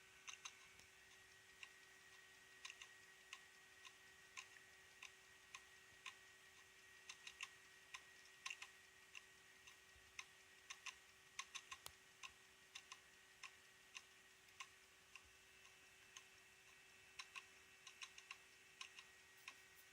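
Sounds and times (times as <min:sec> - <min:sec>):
faint steady hum: 0:00.0 - 0:19.9
hard disk drive clicking: 0:00.0 - 0:19.9.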